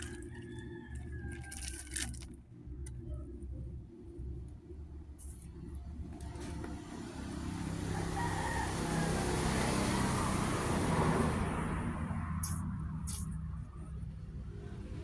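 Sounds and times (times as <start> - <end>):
vehicle passing by: 6.3 - 15.0.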